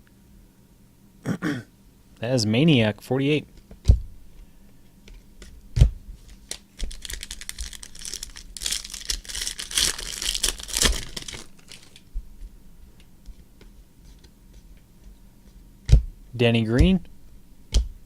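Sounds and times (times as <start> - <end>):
wrapper tearing and crinkling: 6.3 - 12.1.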